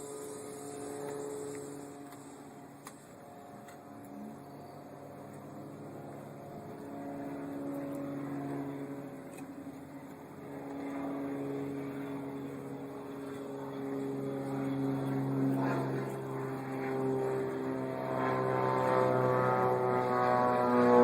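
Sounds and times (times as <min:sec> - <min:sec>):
electric polisher running: 0:00.0 - 0:03.0.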